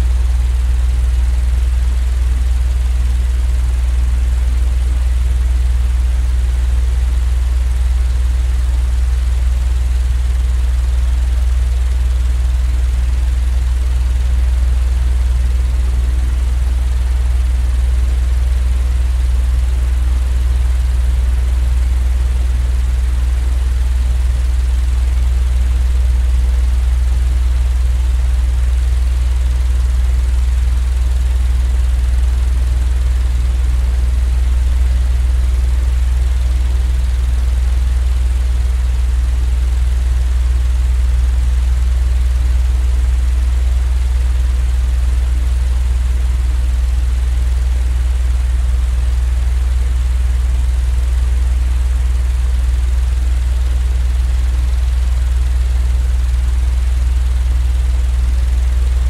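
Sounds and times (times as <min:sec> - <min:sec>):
low rumbling drone: 0:25.1 - 0:27.8, 0:31.3 - 0:41.0.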